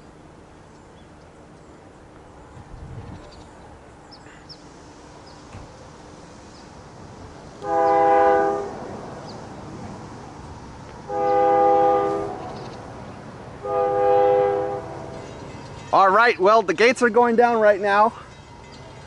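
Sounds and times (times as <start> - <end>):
train air horn blasts: 7.6 - 9.1, 11.0 - 12.6, 13.6 - 15.3.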